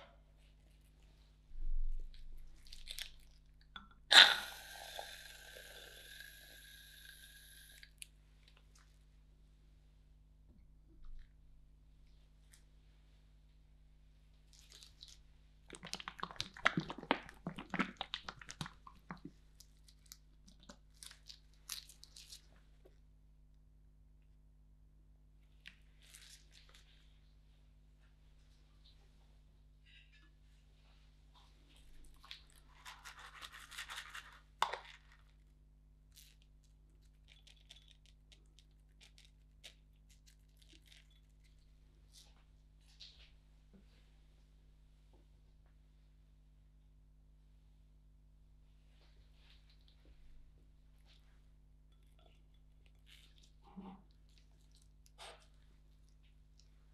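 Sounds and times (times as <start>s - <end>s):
cookie pieces crunching: 2.2s - 3.5s, 14.5s - 22.5s, 32.1s - 35.4s, 36.1s - 41.6s.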